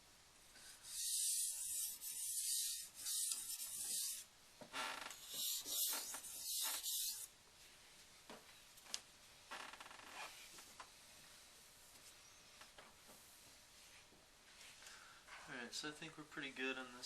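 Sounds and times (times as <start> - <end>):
knife grinding on whetstone: 0.9 - 4.2, 5.2 - 7.3.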